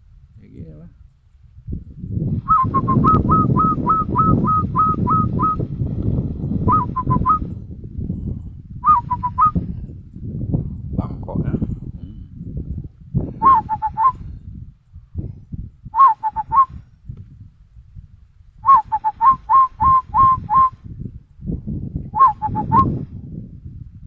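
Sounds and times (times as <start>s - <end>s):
man whistling dove cooing: 2.4s - 5.7s, 6.6s - 7.6s, 8.8s - 9.7s, 13.4s - 14.2s, 16.0s - 16.8s, 18.6s - 20.8s, 22.2s - 23.0s.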